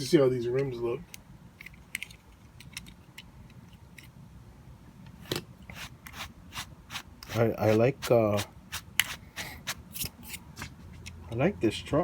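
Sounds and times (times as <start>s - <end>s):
light clicks of toy car parts: 0.6s - 4.2s.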